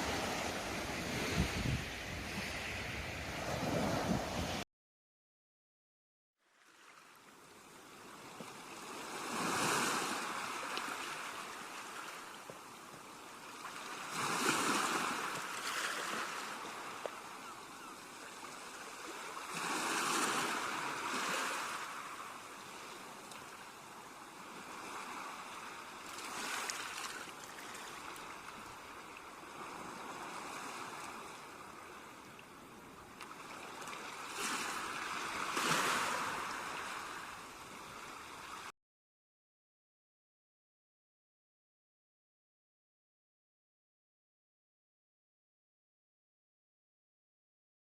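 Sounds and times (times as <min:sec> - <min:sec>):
sea waves breaking on shore: 0:00.0 - 0:04.6, 0:06.5 - 0:38.7.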